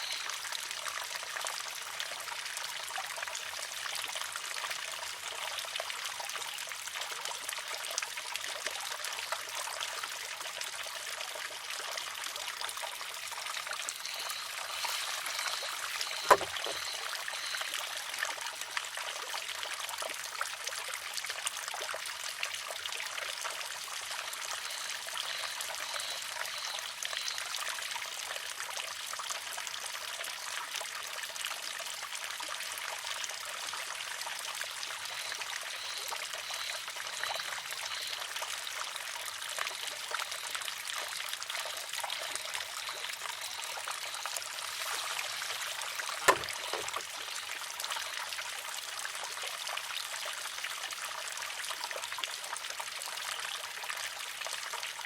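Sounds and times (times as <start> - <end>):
water trickling: 0.0 - 55.0
bamboo arm clacking on stone: 14.2 - 17.2, 46.2 - 47.2.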